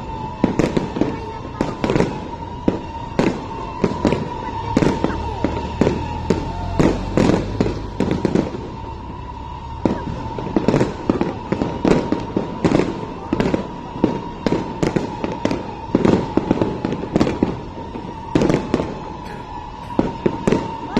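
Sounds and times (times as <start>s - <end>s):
fireworks bangs and pops: 0.0s - 20.9s
steady high tone: 19.0s - 20.9s.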